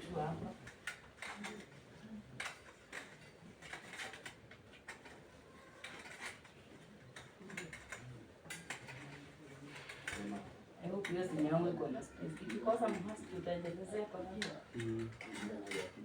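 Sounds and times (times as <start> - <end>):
curtain hooks clicking and rattling: 2.4 - 5.2, 5.8 - 6.6, 7.2 - 16.0.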